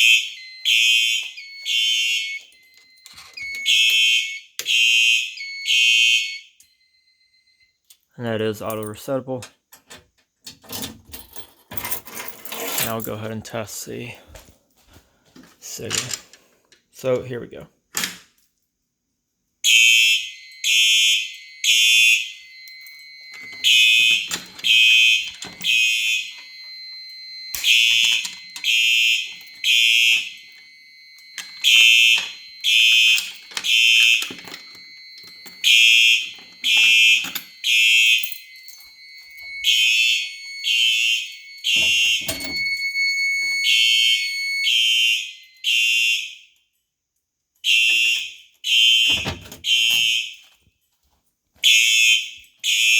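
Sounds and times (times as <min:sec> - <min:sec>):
electronic fire alarm horn blasts: 0:00.0 - 0:07.8, 0:19.6 - 0:46.5, 0:47.6 - 0:50.4, 0:51.6 - 0:52.9.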